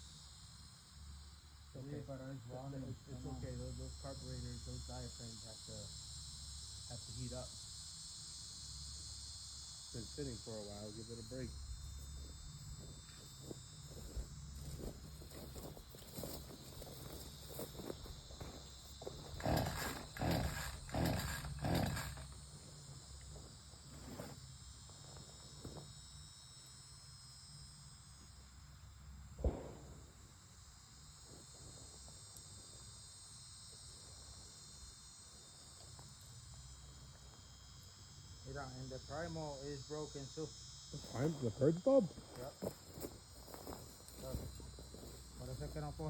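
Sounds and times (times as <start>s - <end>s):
crickets chirring: 0.0s - 46.0s
chainsaw pull-starter cord yanked: 19.1s - 22.4s.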